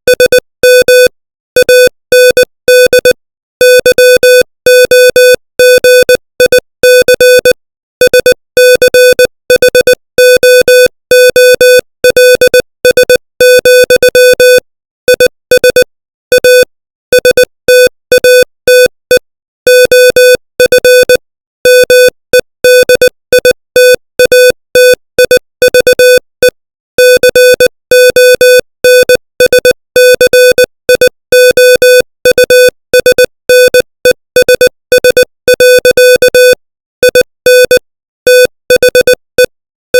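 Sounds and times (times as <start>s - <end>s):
morse code beeps: 0.1s - 39.5s.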